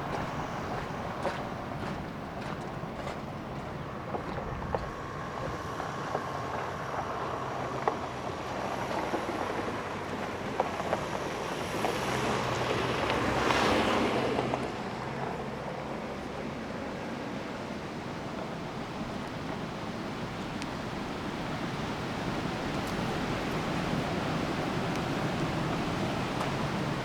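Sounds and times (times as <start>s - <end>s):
wind blowing: 0.0s - 7.3s, 17.4s - 27.0s.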